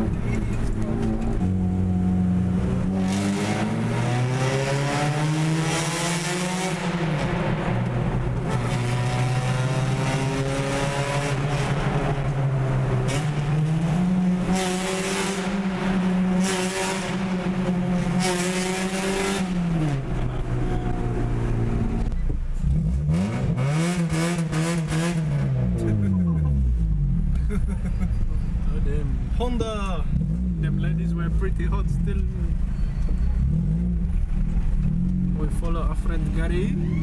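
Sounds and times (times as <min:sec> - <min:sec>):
car engine revving: 0:00.0 - 0:27.6.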